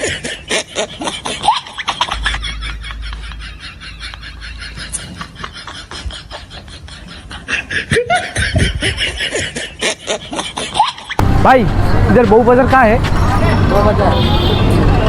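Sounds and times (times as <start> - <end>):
person laughing: 0.0 - 11.2.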